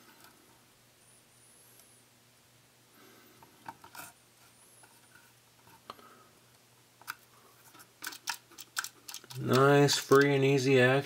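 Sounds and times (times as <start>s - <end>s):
screwdriver clicking and scraping: 7.8s - 10.4s.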